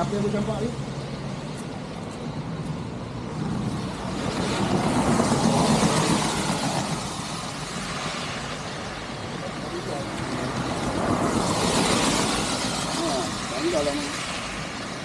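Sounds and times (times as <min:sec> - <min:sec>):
vehicle passing by: 0:03.2 - 0:15.0.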